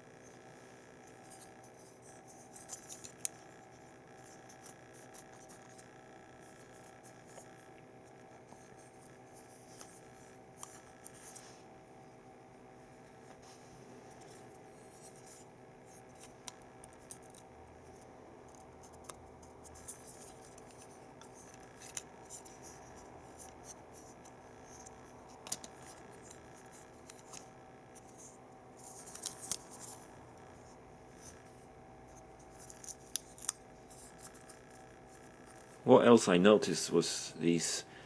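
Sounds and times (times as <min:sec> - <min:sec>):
faint steady hum: 0:00.0 - 0:38.0
plastic parts clicking and scraping: 0:01.2 - 0:03.4, 0:14.2 - 0:30.0.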